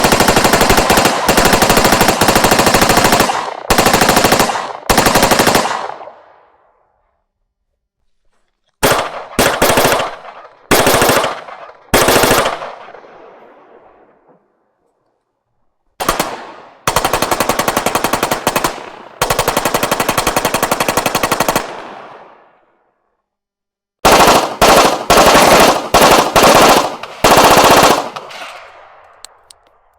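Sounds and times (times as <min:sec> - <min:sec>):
automatic rifle gunfire: 0:00.0 - 0:06.3, 0:08.8 - 0:13.3, 0:16.0 - 0:22.3, 0:24.0 - 0:29.0.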